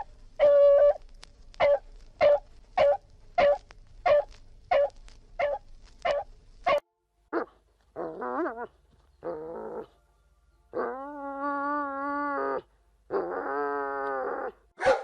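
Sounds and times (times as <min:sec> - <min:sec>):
dog barking: 0:01.6 - 0:06.8, 0:14.8 - 0:15.0
dog yelping and whining: 0:07.4 - 0:09.9.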